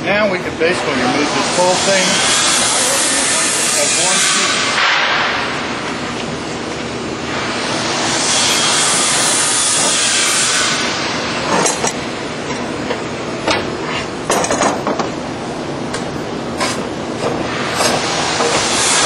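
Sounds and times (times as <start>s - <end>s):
steady machinery noise: 0.0s - 19.0s
metal knocks and clanks: 11.5s - 15.2s.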